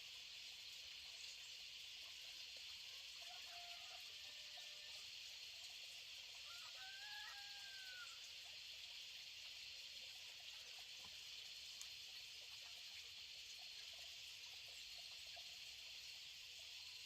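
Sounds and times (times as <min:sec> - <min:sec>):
background hiss: 0:00.0 - 0:03.1
rooster crowing: 0:03.2 - 0:05.0, 0:06.4 - 0:08.3.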